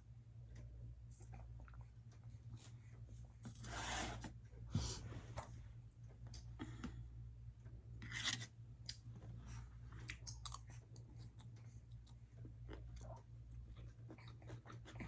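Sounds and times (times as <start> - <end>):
person chewing food: 9.9 - 15.0.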